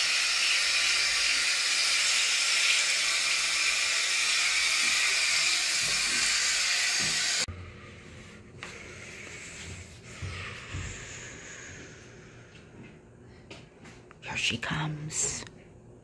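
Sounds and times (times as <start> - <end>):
shower water spray hissing: 0.0 - 7.5.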